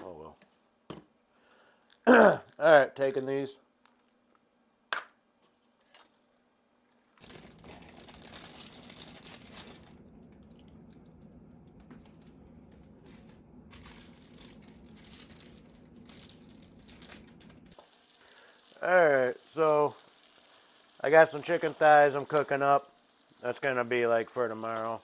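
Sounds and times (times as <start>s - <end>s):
chicken sizzling in a pan: 17.8s - 25.0s.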